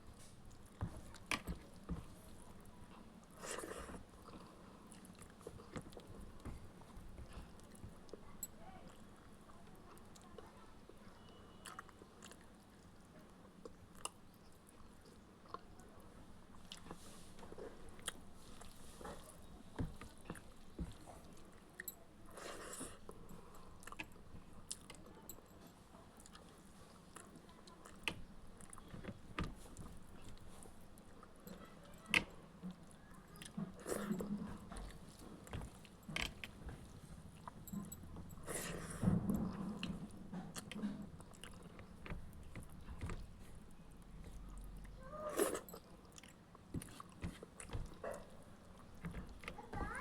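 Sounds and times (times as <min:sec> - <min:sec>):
chewing and smacking: 0:00.1 - 0:50.0
wet mouth sounds: 0:45.3 - 0:47.7.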